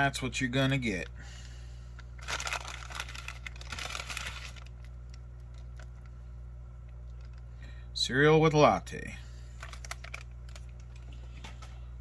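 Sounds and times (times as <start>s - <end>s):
plastic packaging crinkling: 1.9s - 6.3s, 6.9s - 7.6s, 9.5s - 11.7s.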